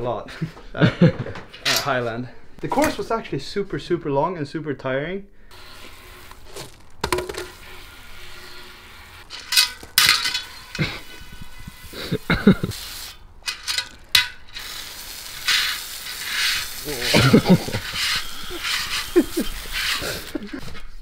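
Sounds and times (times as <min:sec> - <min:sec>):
bike wheel scraping and clinking: 0:05.5 - 0:21.0
rubbery squeaks: 0:15.5 - 0:21.0.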